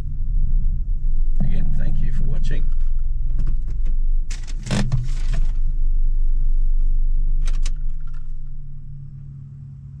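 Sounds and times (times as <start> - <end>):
car engine hum in cabin: 0.0 - 10.0
rustling: 2.7 - 5.8.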